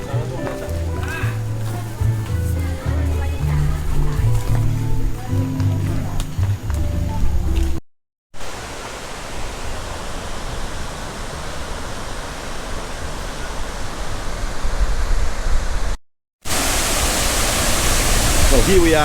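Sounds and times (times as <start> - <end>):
waterfall rushing: 8.4 - 14.7, 16.5 - 19.0.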